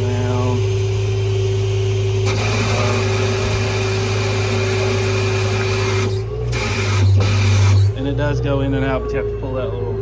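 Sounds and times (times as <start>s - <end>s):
hydraulic system humming: 0.0s - 10.0s
hydraulic rushing hiss: 2.2s - 8.0s.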